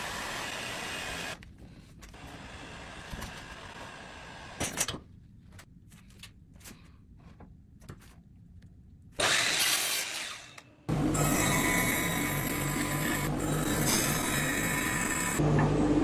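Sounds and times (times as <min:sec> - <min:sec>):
loud rough tool noise: 0:09.2 - 0:15.4.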